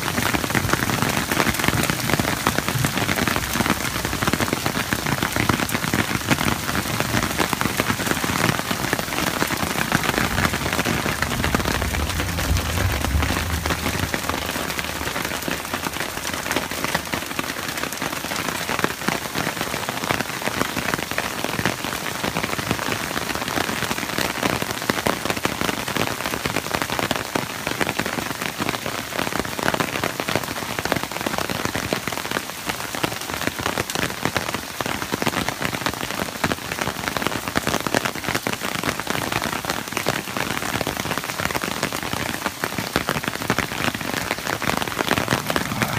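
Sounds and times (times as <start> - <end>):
heavy rain pattering: 0.0 - 45.9
low rumble: 11.1 - 16.2.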